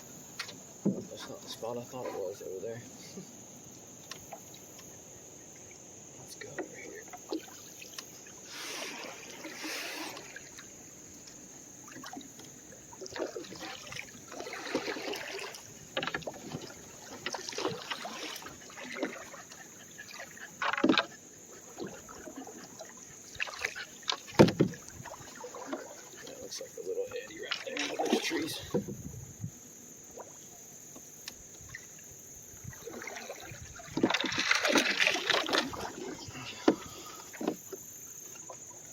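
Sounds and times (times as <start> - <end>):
paddle strokes swishing through water: 0.0 - 38.9
sharp knocks on canoe: 0.4 - 1.4, 23.4 - 25.9, 27.5 - 29.1, 33.8 - 35.9, 36.6 - 37.7.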